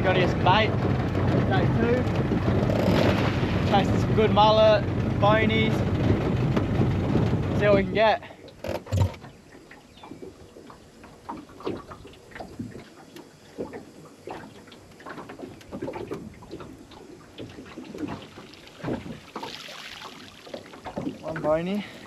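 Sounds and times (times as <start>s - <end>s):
water knocking at boat: 0.0s - 22.0s
water splashing and dripping: 0.0s - 22.0s.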